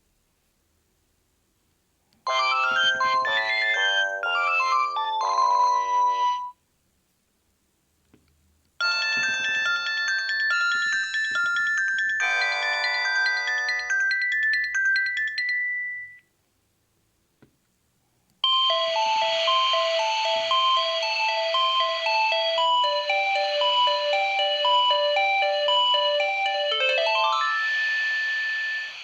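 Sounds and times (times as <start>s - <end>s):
electronic ringtone melodies: 2.3s - 6.6s, 8.8s - 16.2s, 18.4s - 29.0s.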